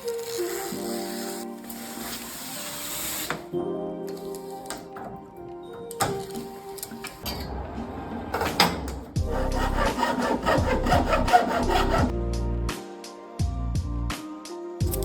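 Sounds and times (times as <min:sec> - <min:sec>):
rasping scraping work sounds: 0:09.1 - 0:12.1
music with low beat: 0:09.2 - 0:12.8.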